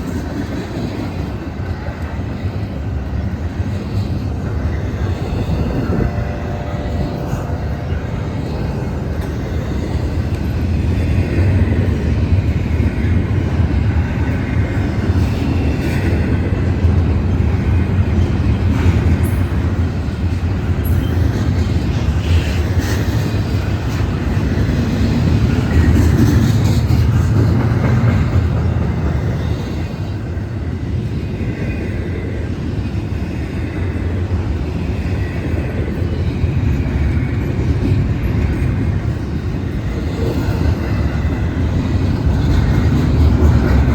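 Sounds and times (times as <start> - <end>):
freight train rumbling past: 0.0 - 43.9.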